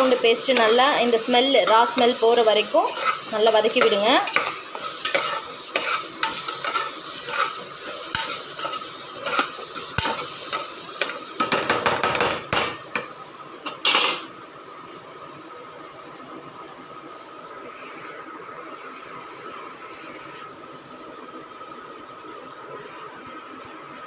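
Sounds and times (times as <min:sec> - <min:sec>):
onions sizzling in oil: 0:00.0 - 0:24.0
spoon scraping a pot: 0:00.1 - 0:13.1.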